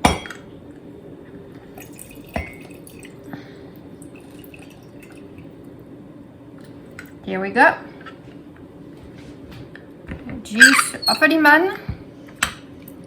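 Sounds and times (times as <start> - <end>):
juice dripping into a cup: 1.6 - 5.9.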